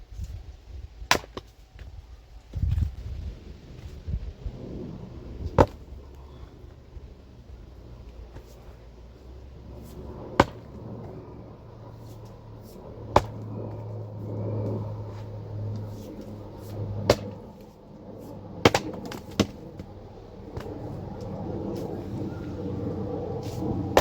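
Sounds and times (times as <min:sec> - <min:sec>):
low steady hum: 0:00.0 - 0:24.0
axe splitting firewood: 0:01.1 - 0:01.6, 0:05.4 - 0:06.4, 0:09.7 - 0:11.0, 0:12.2 - 0:13.8, 0:16.0 - 0:19.6, 0:23.4 - 0:24.0.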